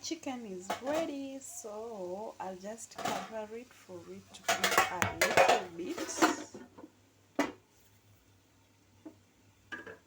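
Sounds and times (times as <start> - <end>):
metal pot and lid clinking: 4.4 - 6.6.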